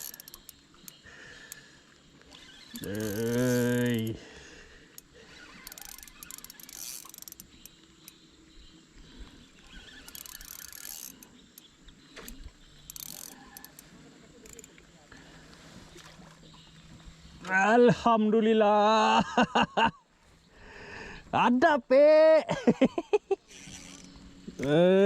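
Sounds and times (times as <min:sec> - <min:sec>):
fishing reel clicking: 0:00.0 - 0:04.2, 0:04.8 - 0:08.7, 0:09.5 - 0:14.9, 0:23.5 - 0:24.8.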